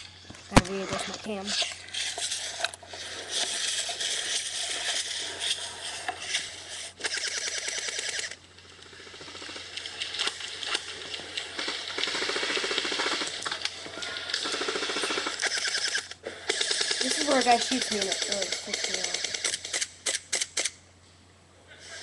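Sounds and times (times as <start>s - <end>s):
airsoft guns firing full-auto: 7.0s - 13.6s, 14.2s - 20.2s.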